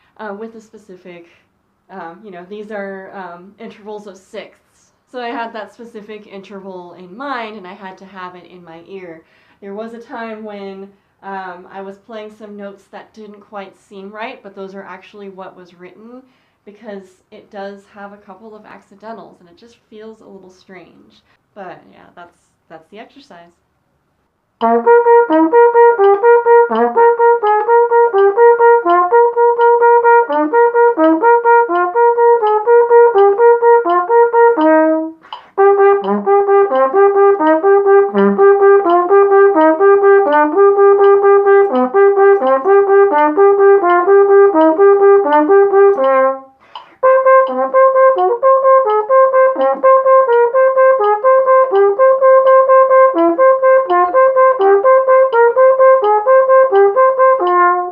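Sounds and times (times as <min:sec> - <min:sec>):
flugelhorn playing repeated notes: 0:24.6 - 0:57.9.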